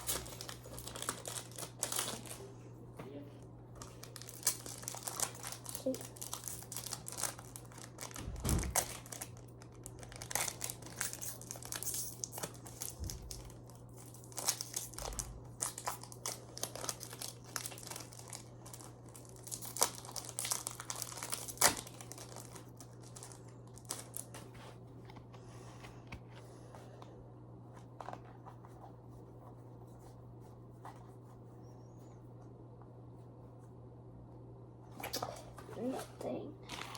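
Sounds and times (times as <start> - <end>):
foil wrappers crinkling and tearing: 0.0 - 2.6, 3.8 - 24.5, 36.6 - 36.9
steady low hum: 0.0 - 36.9.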